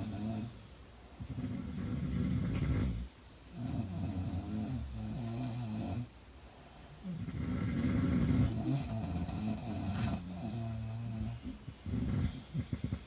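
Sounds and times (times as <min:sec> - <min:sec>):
woman snoring: 0:07.0 - 0:13.0.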